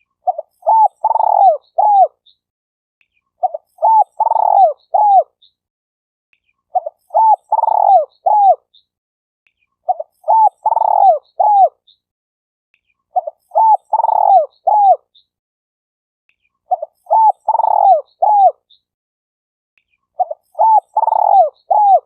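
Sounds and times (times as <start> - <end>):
dove cooing: 0.2 - 2.2, 3.4 - 5.3, 6.8 - 8.6, 9.9 - 11.8, 13.2 - 15.0, 16.7 - 18.6, 20.2 - 22.0.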